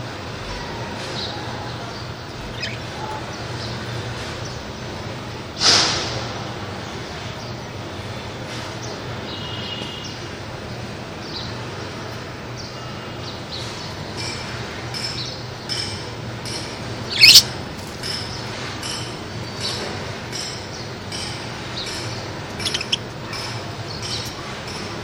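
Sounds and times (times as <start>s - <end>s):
lovebirds chirping: 2.0s - 3.9s, 17.0s - 17.6s, 21.7s - 24.8s
bird squawk: 2.4s - 3.2s, 17.1s - 17.5s, 22.5s - 23.5s.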